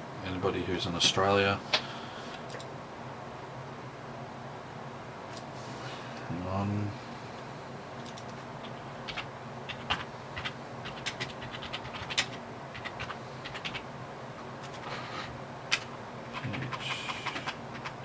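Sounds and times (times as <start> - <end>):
low steady hum: 0.0 - 18.0
keyboard typing: 8.0 - 13.8, 15.7 - 18.0.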